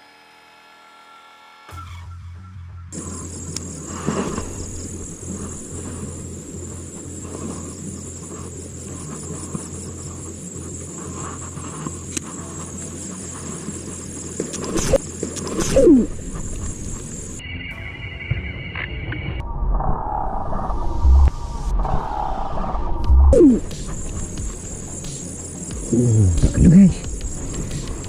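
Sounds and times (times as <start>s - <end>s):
insects buzzing: 3.0s - 18.9s, 21.4s - 28.0s
low rumble: 19.4s - 28.0s.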